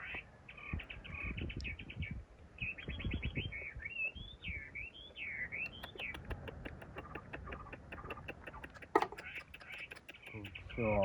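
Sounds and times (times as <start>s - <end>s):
songbird singing: 0.0s - 11.0s
fast sharp ticks: 5.7s - 10.5s.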